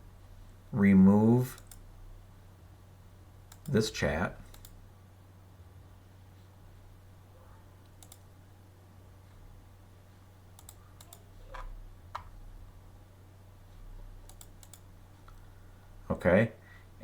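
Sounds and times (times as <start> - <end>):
faint low hum: 0.0 - 17.0
keyboard and mouse clicks: 1.5 - 1.8, 3.5 - 3.8, 4.5 - 4.8, 7.8 - 8.3, 10.6 - 12.4, 14.3 - 15.4.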